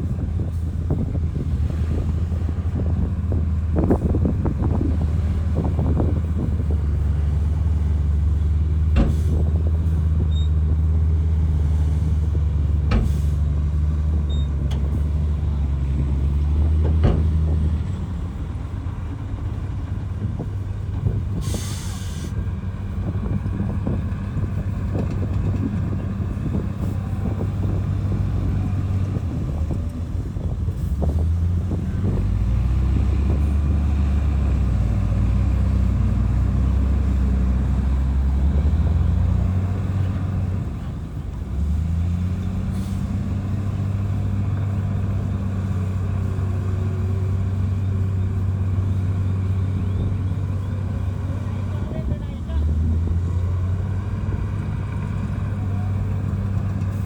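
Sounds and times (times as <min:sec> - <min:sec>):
heavy diesel machinery running: 0:00.0 - 0:57.0
air hiss: 0:21.4 - 0:22.4.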